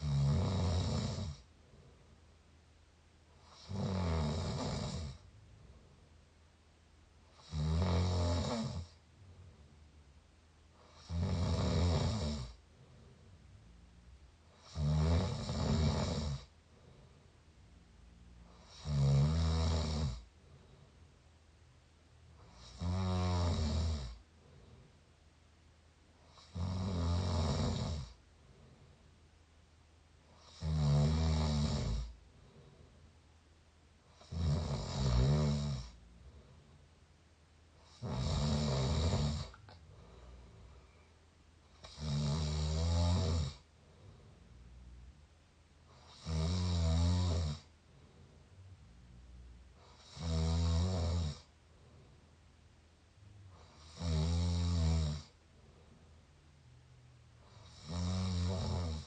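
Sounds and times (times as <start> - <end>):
person mouth snoring: 0.0 - 1.4, 3.4 - 5.2, 7.3 - 9.0, 10.8 - 12.6, 14.6 - 16.5, 18.5 - 20.2, 22.4 - 24.2, 26.3 - 28.2, 30.4 - 32.2, 34.1 - 36.0, 37.8 - 39.8, 41.8 - 43.6, 45.9 - 47.7, 49.8 - 51.5, 53.5 - 55.4, 57.4 - 59.0.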